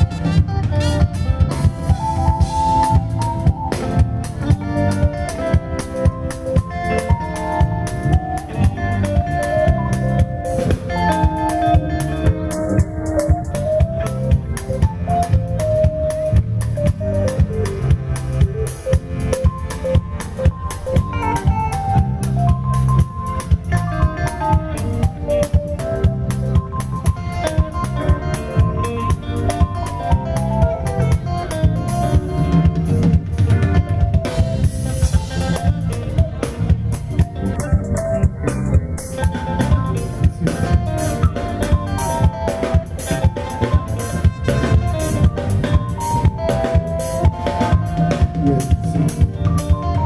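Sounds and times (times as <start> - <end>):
driving drum beat: 0.0 - 50.0
live band playing instrumental groove: 0.0 - 50.0.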